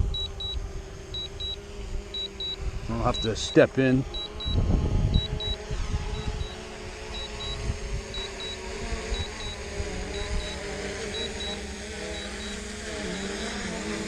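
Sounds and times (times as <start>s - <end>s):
drone propellers humming: 0.0s - 14.0s
remote controller beeps: 0.1s - 0.6s, 1.2s - 1.6s, 2.2s - 2.6s, 3.2s - 3.5s, 4.1s - 4.6s, 5.2s - 5.6s, 6.2s - 6.6s, 7.2s - 8.6s, 9.2s - 9.6s, 10.2s - 11.6s, 12.2s - 13.6s
wind buffeting microphone: 4.3s - 10.5s.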